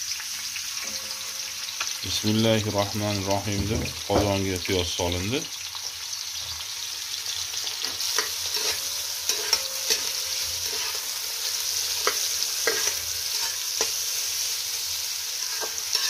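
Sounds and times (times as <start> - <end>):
onions sizzling in hot oil: 0.0 - 16.0.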